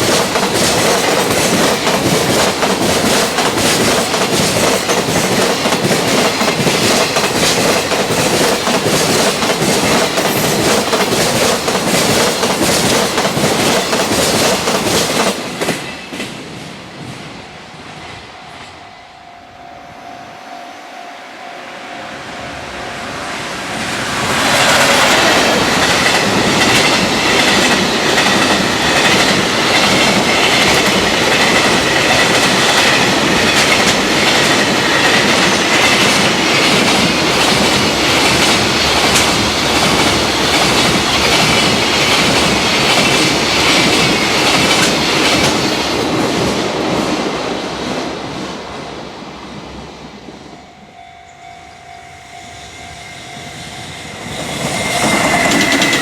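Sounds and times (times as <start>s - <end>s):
train wheels clattering over rail joints: 0.0s - 17.3s, 24.2s - 47.0s, 54.3s - 56.0s
locomotive traction motor whine: 17.3s - 27.4s.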